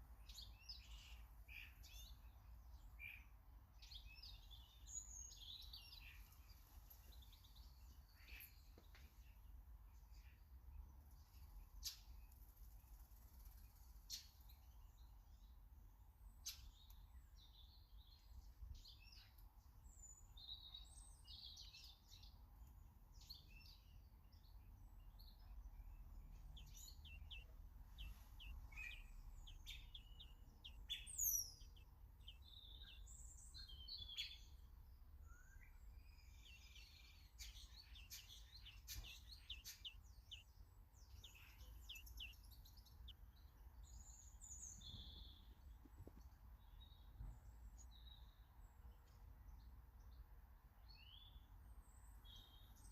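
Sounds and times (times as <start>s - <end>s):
songbirds chirping faintly: 0.0s - 52.9s.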